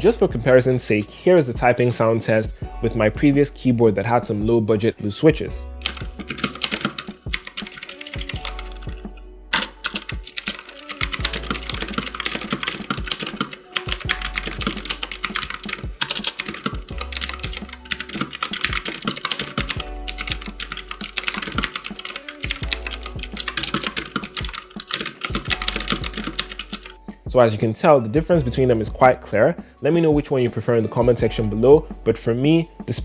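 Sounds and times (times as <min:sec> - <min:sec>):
mechanical keyboard typing: 0:05.8 - 0:27.0.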